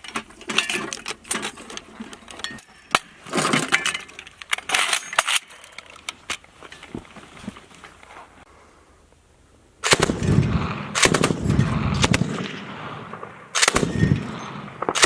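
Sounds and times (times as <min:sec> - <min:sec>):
heavy machine gun bursts: 0:09.8 - 0:15.0.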